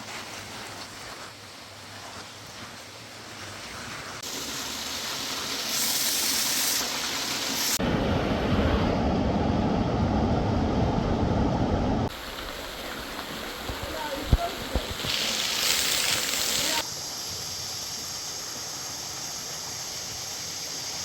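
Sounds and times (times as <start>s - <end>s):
rushing river water: 12.1s - 16.9s.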